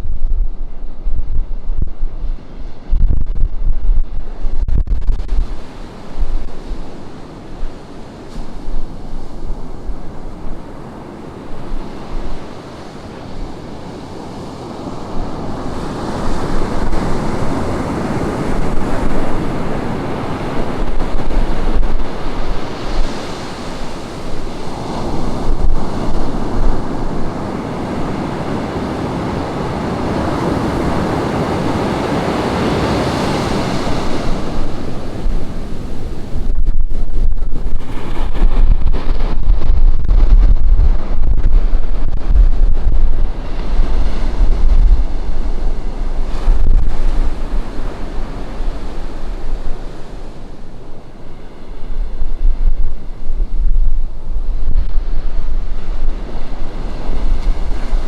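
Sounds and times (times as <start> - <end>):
wind rumble on microphone: 0.0 - 58.0
ocean surf breaking: 0.6 - 58.0.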